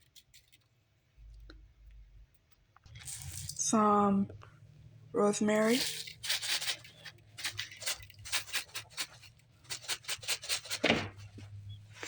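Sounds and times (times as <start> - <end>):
dried leaves rustling and crackling: 5.5 - 10.1.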